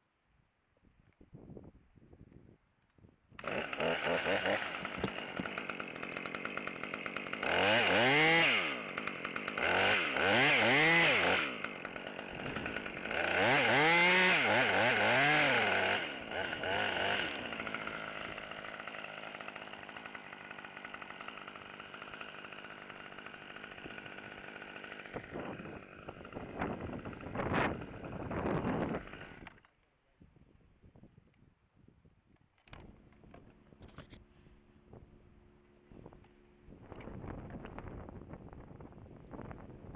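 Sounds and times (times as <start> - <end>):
chainsaw revving and idling: 3.4 - 29.7.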